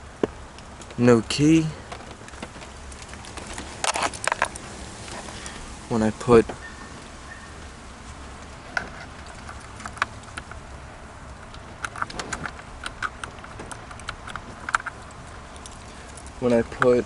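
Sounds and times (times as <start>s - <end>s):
light clicks and taps: 11.2s - 17.0s.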